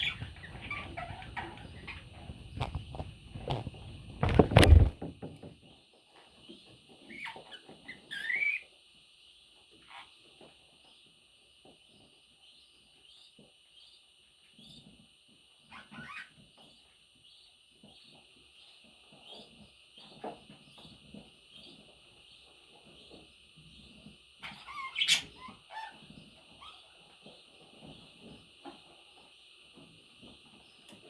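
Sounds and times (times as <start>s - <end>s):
chicks chirping softly: 0.0s - 4.9s, 5.6s - 31.0s
faint scratches and clicks: 0.0s - 5.0s
rustling scuffle in nest: 0.0s - 5.0s.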